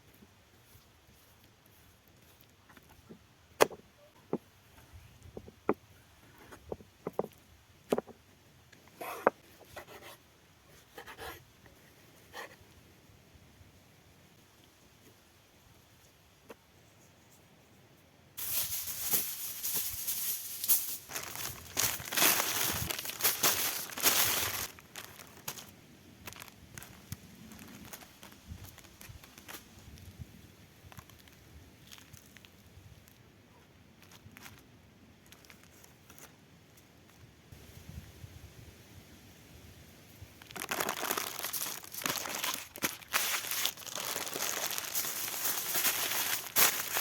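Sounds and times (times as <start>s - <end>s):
loud crinkling and rustling: 18.4s - 30.1s, 40.4s - 47.0s.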